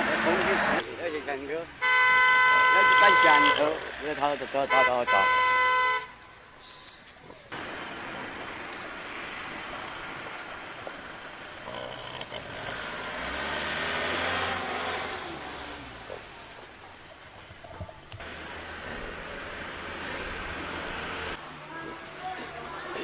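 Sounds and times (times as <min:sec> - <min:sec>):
road traffic noise: 0:00.0 - 0:23.0
horn beep: 0:01.8 - 0:03.8, 0:04.6 - 0:06.2
vehicle passing: 0:07.5 - 0:23.0.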